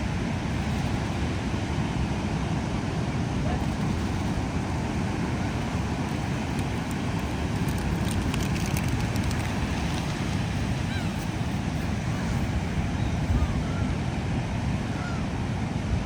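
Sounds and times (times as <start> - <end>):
sea surf rushing on shore: 0.0 - 16.0
wind buffeting microphone: 0.0 - 16.0
faint clicks: 5.4 - 11.4.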